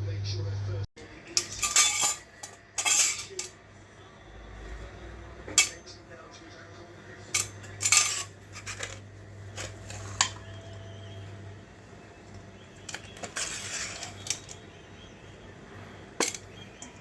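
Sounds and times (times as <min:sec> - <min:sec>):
metal utensils clinking on pots: 0:01.2 - 0:03.6, 0:05.4 - 0:06.0, 0:07.2 - 0:11.4, 0:12.2 - 0:15.1, 0:15.9 - 0:17.0.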